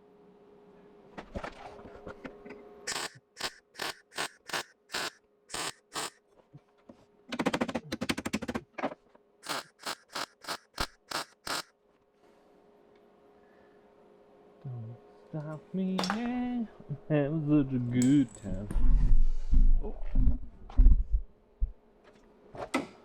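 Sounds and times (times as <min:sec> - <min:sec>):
welder crackling bursts: 0:02.9 - 0:06.2, 0:09.4 - 0:11.7.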